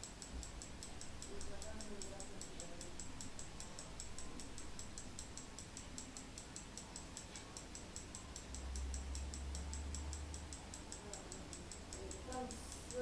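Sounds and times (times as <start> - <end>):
mechanical alarm clock ticking: 0.0 - 13.0.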